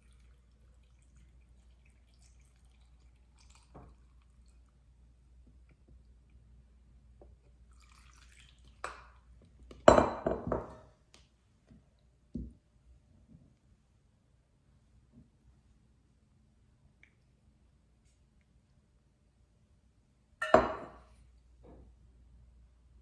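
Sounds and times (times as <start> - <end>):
kitchenware clattering: 9.8 - 10.9, 20.4 - 21.1
kitchenware clinking: 9.8 - 10.9, 20.4 - 21.1
kitchenware knock: 9.9 - 10.8, 20.4 - 21.0.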